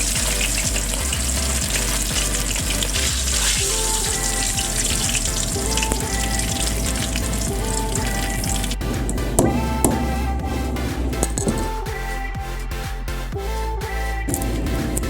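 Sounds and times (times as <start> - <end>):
fish frying in hot oil: 0.0 - 8.4.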